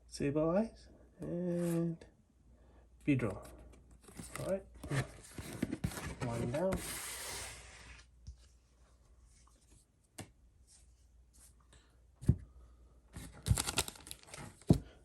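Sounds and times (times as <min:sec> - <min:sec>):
wrapper rustling: 0:13.2 - 0:14.8.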